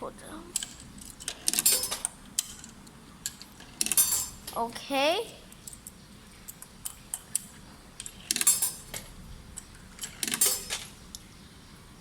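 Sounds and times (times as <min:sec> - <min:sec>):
coins clinking into coin slot: 0:00.6 - 0:04.6, 0:08.0 - 0:09.1, 0:10.0 - 0:11.0.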